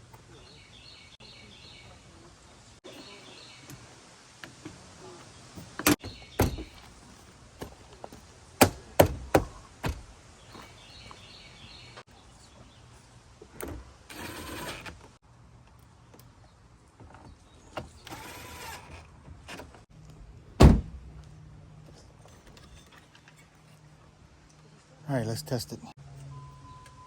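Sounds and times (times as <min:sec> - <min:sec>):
birds chirping faintly: 0:00.0 - 0:08.2, 0:09.5 - 0:13.9
door trim panel knocking and snapping: 0:06.0 - 0:06.7.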